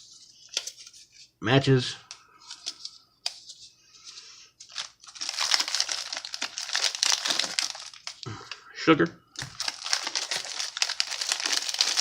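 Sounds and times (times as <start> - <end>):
packets crinkling and rustling: 4.6 - 8.3, 9.4 - 12.0.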